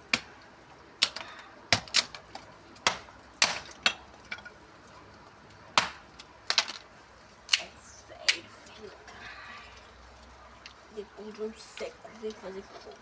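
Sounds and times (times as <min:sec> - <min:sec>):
wooden sticks snapping: 0:00.0 - 0:00.4, 0:01.0 - 0:04.5, 0:05.8 - 0:08.5.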